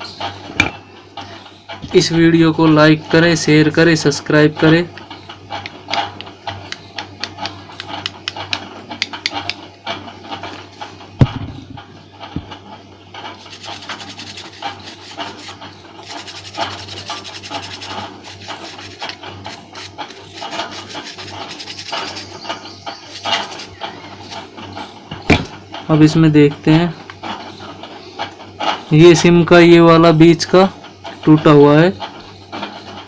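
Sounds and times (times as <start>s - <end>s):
scratchy rubbing on circuit board: 13.4s - 24.5s.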